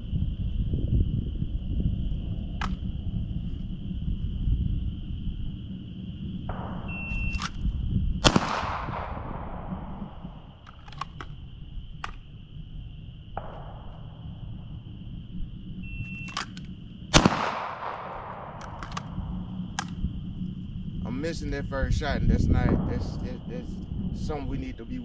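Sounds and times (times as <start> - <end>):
pistol shots echoing: 8.2 - 12.4, 16.1 - 20.1.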